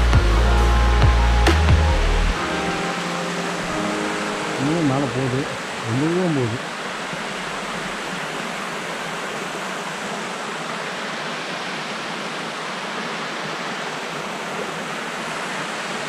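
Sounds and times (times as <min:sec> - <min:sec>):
water falling down waterfall: 0:00.0 - 0:16.0.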